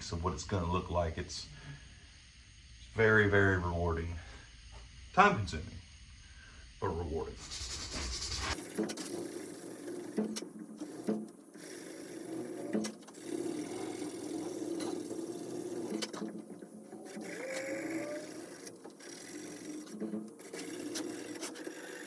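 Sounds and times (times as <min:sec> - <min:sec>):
sandpaper rasping on wood: 0:07.4 - 0:08.7.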